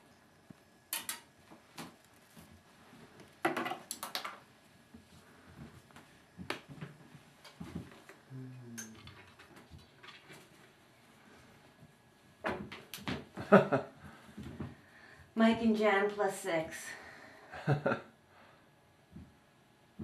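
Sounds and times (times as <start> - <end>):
kittens tapping and scuffling on floor: 0.4 - 10.8, 11.6 - 14.8.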